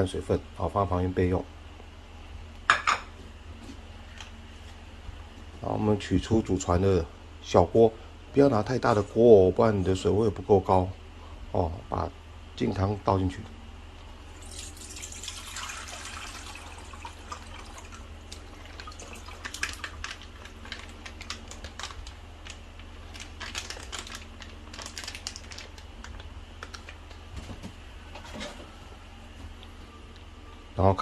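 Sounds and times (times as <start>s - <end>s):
steady low hum: 0.0s - 31.0s
liquid pouring into a pot: 14.4s - 20.6s
packet clicks and crinkles: 19.4s - 27.2s.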